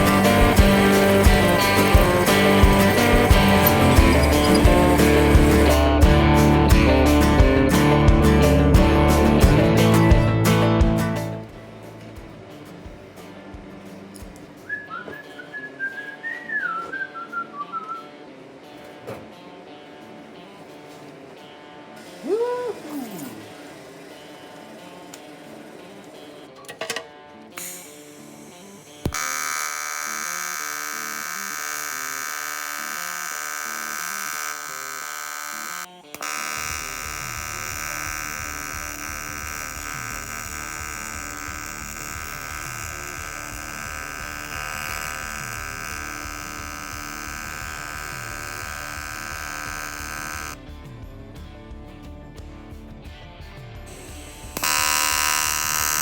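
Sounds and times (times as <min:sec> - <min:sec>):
high electric buzz on metal: 0:00.0 - 0:12.2, 0:21.9 - 0:26.6, 0:27.5 - 0:50.6, 0:53.9 - 0:56.0
background music with beat: 0:00.0 - 0:18.2, 0:45.6 - 0:56.0.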